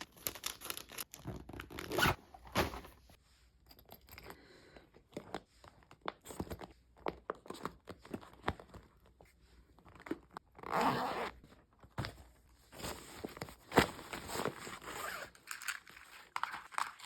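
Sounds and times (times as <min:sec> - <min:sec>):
clicks and scrapes of objects handled: 0:14.7 - 0:17.0.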